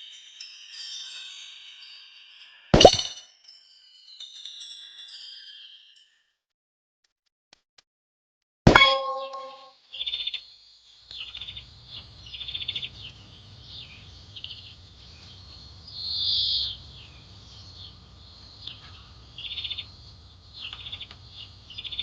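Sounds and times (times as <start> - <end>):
bird chirping in trilled bursts: 8.8 - 9.7.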